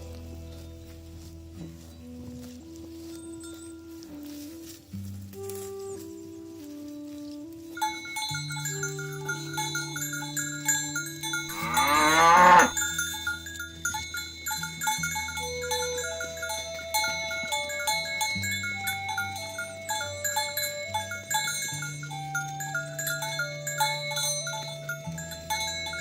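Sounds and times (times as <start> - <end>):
background music with bass: 0.0 - 26.0
cow mooing: 11.5 - 12.8.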